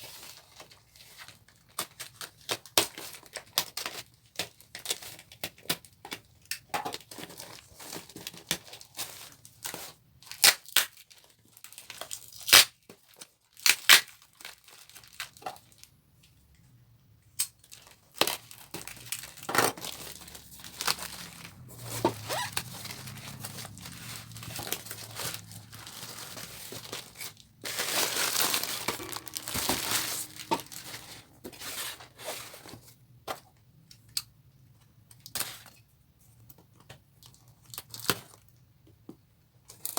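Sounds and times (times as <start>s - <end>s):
wrapping crinkling: 7.0s - 16.0s, 17.6s - 32.8s
wrapping tearing: 7.2s - 15.9s, 17.6s - 31.3s.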